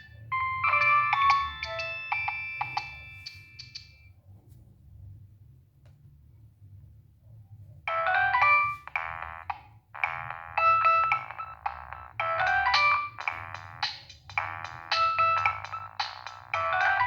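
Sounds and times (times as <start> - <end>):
polyphonic phone ringtone: 0.0 - 3.9, 7.9 - 17.0.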